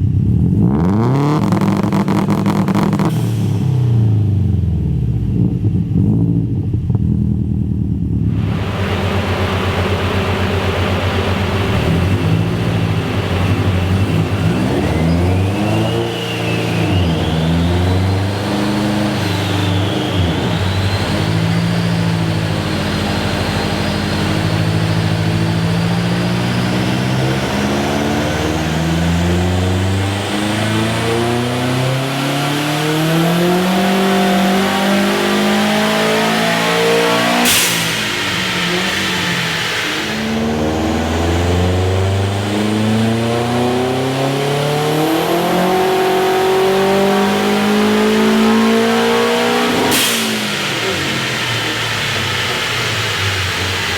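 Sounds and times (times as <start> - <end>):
turbocharged engine pulling hard: 0.4 - 6.9, 8.3 - 53.9
faint rising whine: 8.3 - 18.4, 35.9 - 44.6
burst of hiss: 36.8 - 41.4, 48.8 - 53.9.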